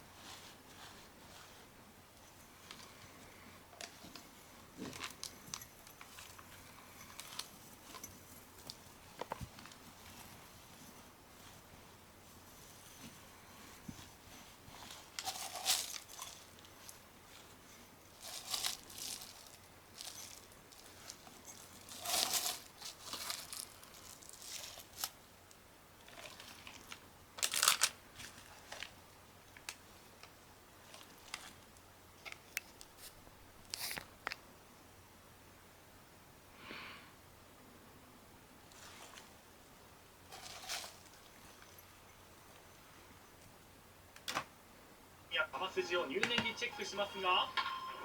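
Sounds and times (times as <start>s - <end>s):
scratchy rustles: 0.0s - 25.2s, 38.6s - 39.4s, 40.2s - 42.0s
crinkling and tearing: 14.8s - 25.2s, 26.0s - 29.0s, 40.3s - 41.7s.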